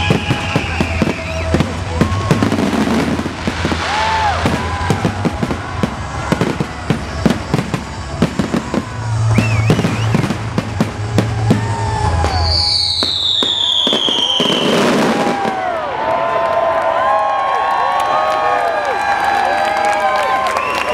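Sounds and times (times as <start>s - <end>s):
long falling whistle: 0.0s - 1.6s, 8.8s - 10.4s, 11.4s - 15.6s, 20.2s - 20.9s
music playing: 0.0s - 13.6s
fireworks bangs and crackling: 0.0s - 15.8s
crowd cheering: 0.0s - 20.9s.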